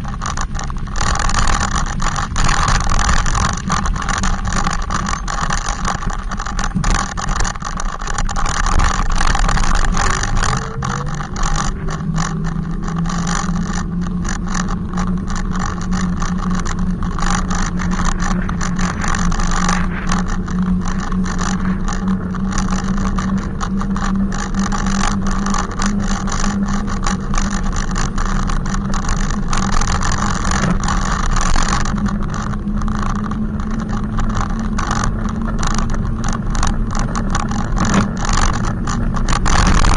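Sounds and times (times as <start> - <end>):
rushing ride noise: 0.0 - 25.8.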